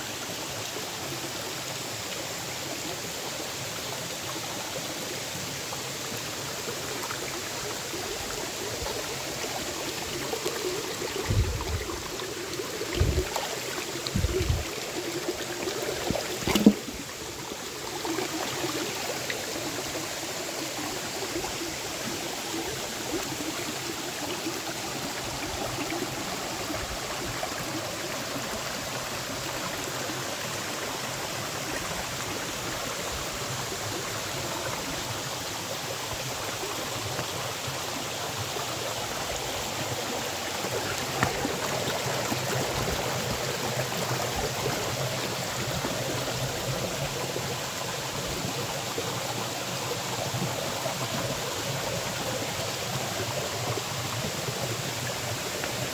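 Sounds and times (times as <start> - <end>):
water rushing over rocks: 6.2 - 27.7, 38.3 - 55.9.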